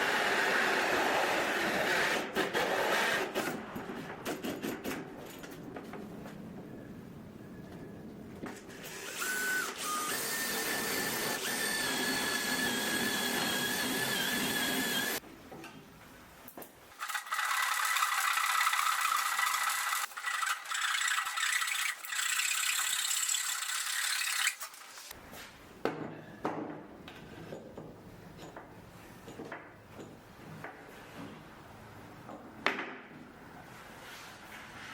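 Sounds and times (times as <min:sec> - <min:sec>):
power tool cutting wood: 0:08.8 - 0:15.2, 0:17.0 - 0:25.1.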